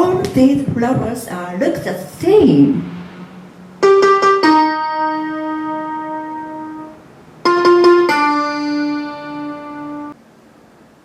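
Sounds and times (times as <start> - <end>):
piano keyboard chords: 2.2 - 10.2.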